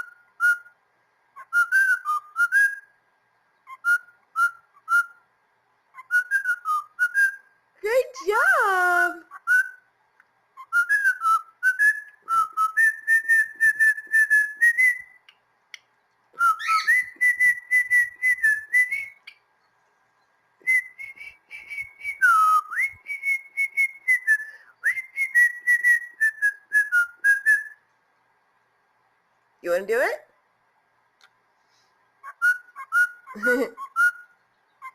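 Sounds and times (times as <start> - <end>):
cockatiel whistling: 0.0 - 0.7, 1.4 - 2.9, 3.6 - 5.2, 5.9 - 7.5, 9.3 - 9.8, 10.6 - 15.4, 16.4 - 19.4, 20.6 - 27.8, 32.2 - 34.9.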